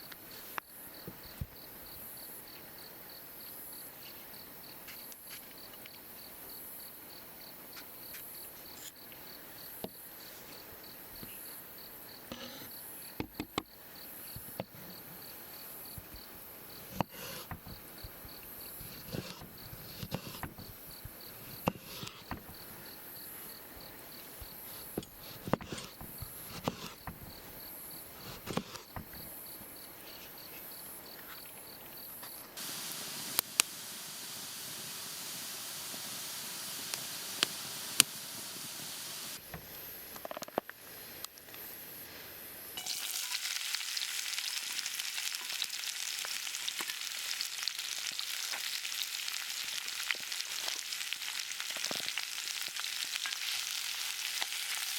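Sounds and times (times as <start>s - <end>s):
food frying and sizzling: 32.6s - 39.4s, 42.8s - 54.9s.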